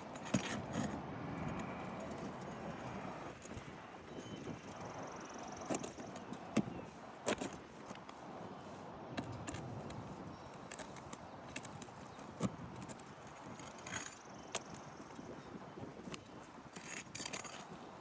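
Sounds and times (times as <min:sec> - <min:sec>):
outdoor background noise: 0:00.0 - 0:18.0.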